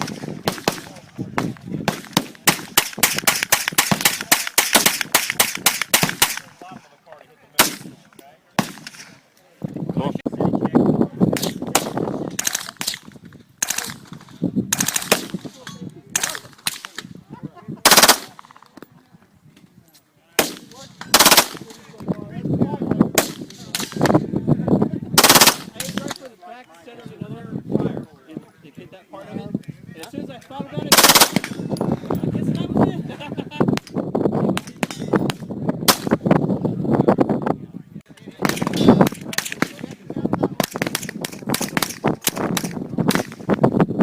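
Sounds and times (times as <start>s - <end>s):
single gunshots: 0.0s - 6.5s, 7.6s - 8.0s, 8.6s - 9.2s, 17.8s - 18.5s, 20.4s - 21.7s, 25.2s - 26.1s, 30.9s - 31.6s, 35.9s - 36.2s
rapid gunfire: 0.0s - 6.6s, 13.6s - 15.5s, 17.8s - 18.4s, 20.4s - 21.8s, 25.2s - 26.0s, 30.9s - 31.6s, 40.6s - 43.5s
single gunshot: 7.6s - 7.9s
automatic gunfire bursts: 17.8s - 18.4s, 21.1s - 21.6s, 25.2s - 25.7s, 30.9s - 31.5s.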